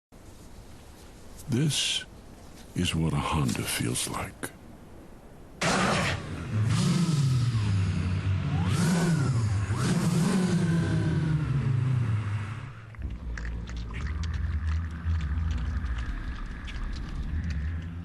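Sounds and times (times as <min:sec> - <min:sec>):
low hum: 0:04.8 - 0:18.0
voices imitating engine revving: 0:05.6 - 0:12.8.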